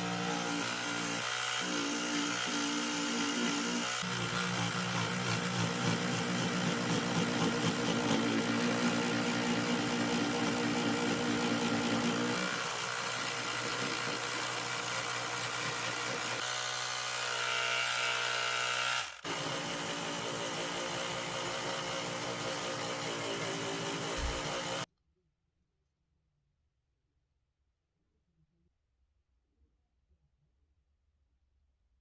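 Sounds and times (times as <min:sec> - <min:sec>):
power tool motor running: 0:00.0 - 0:24.9.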